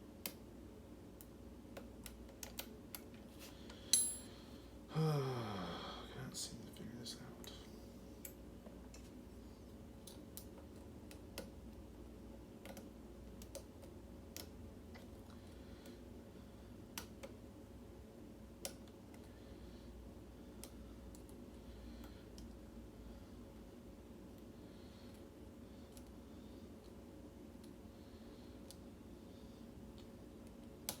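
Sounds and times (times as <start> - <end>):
low steady hum: 0.0 - 31.0.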